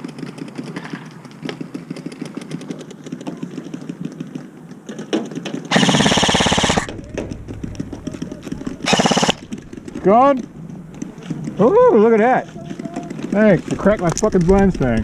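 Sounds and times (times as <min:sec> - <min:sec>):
airsoft gun full-auto burst: 0:05.7 - 0:06.9, 0:08.8 - 0:09.7.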